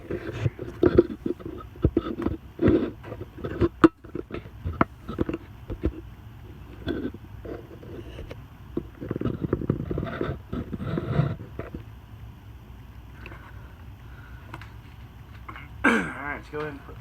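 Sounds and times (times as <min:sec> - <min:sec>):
rustling and clattering: 0:00.0 - 0:11.8
steady low hum: 0:00.0 - 0:17.0.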